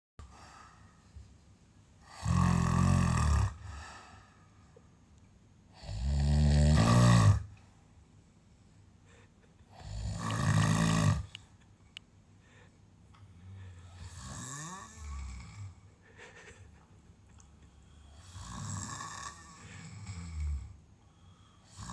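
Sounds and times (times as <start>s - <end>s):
animal snoring: 2.0s - 3.8s, 5.8s - 7.5s, 9.8s - 11.4s, 13.6s - 15.8s, 18.1s - 20.8s, 21.6s - 21.9s.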